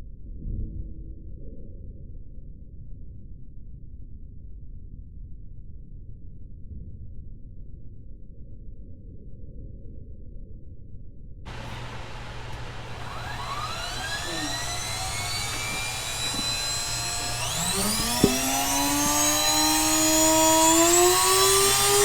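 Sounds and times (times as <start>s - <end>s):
motor whine rising in pitch: 11.5s - 22.0s.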